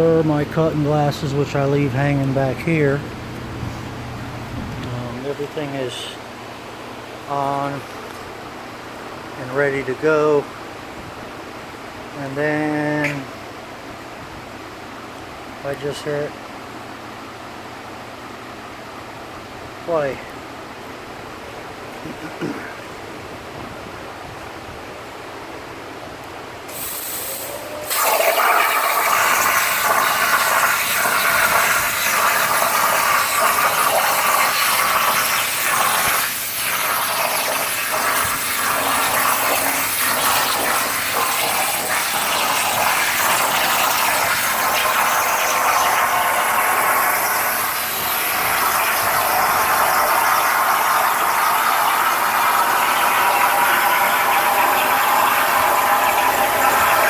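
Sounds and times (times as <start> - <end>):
plasma cutter hiss: 26.7 - 57.0
torch cutting through metal: 26.7 - 57.0.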